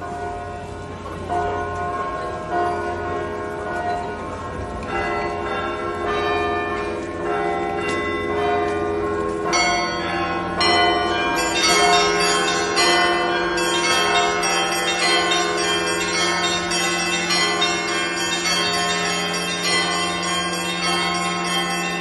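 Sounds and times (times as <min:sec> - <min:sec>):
low bells humming: 0:00.0 - 0:22.0
small bells striking: 0:04.8 - 0:22.0.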